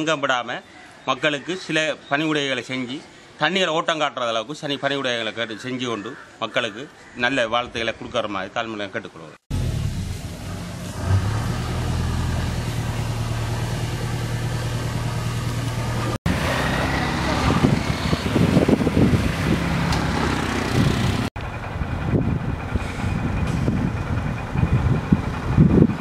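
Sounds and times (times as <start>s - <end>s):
vehicle engine running: 9.5s - 26.0s.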